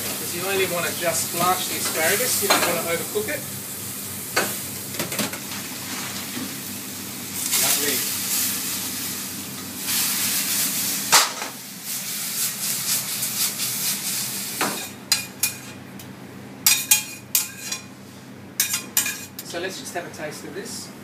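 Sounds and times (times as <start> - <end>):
sauce sizzling in frying pan: 0.0 - 15.7
metal utensils clinking on pan: 18.6 - 19.3.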